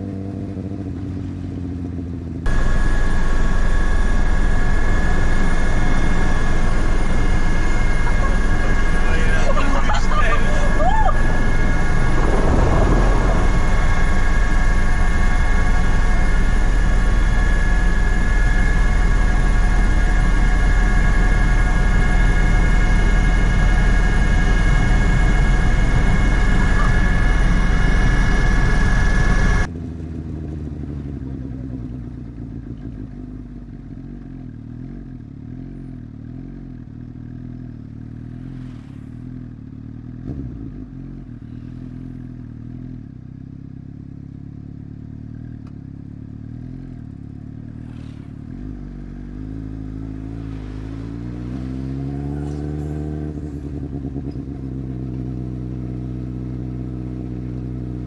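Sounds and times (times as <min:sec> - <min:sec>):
motorcycle engine running: 0:00.0 - 0:58.0
loud rushing noise: 0:02.5 - 0:19.0, 0:50.0 - 0:53.5.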